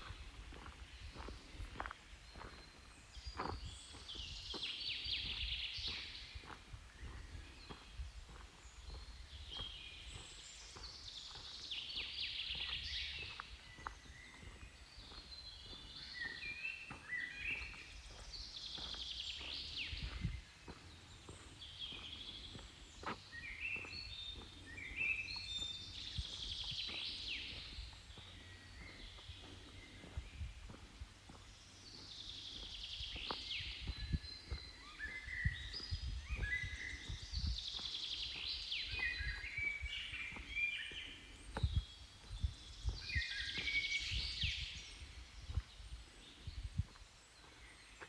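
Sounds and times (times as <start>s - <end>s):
songbirds singing: 0.0s - 48.0s.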